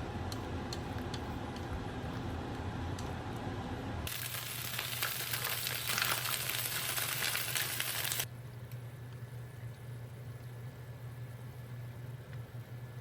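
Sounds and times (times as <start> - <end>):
food sizzling in a hot pan: 4.1 - 8.3.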